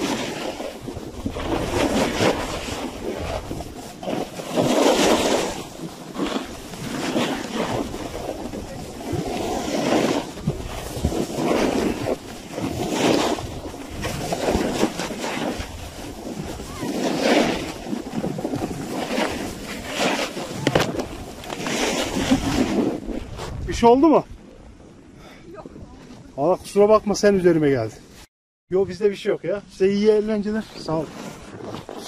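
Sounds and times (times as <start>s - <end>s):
snowboard scraping over snow: 0.0s - 24.2s, 29.8s - 32.0s
wind on microphone: 0.0s - 27.4s.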